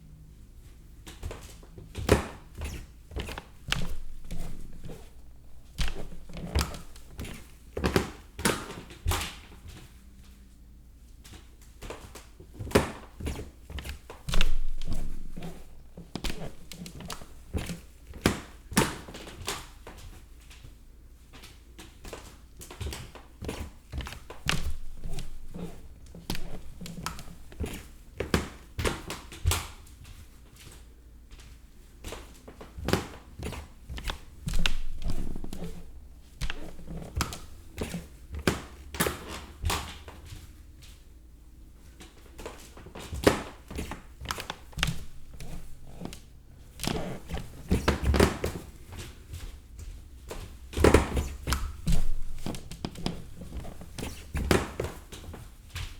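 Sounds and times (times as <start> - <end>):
footsteps on creaking stairs: 1.3 - 8.0, 42.5 - 55.9.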